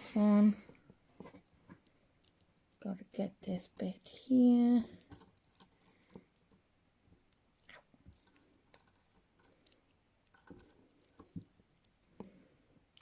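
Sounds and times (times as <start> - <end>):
handcuff being handled: 5.0 - 6.6, 8.1 - 12.1.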